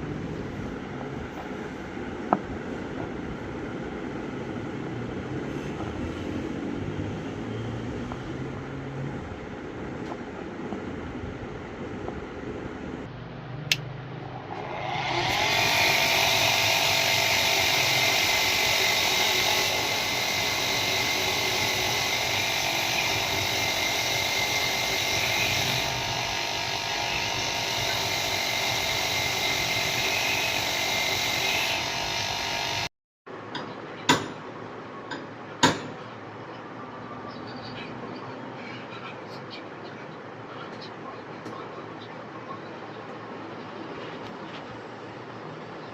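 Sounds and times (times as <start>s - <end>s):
power tool whining: 14.3s - 32.9s.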